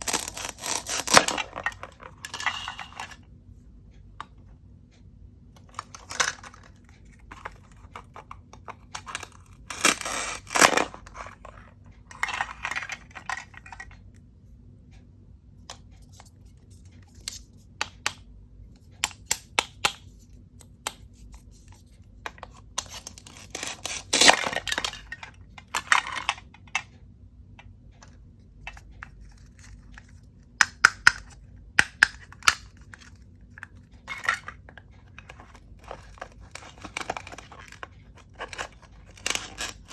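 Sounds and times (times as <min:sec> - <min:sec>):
plastic toy clicks and clacks: 0:22.3 - 0:26.9.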